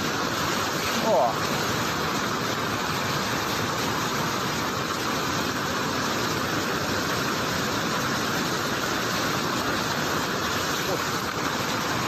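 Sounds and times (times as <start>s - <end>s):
floodwater rushing: 0.0s - 12.0s.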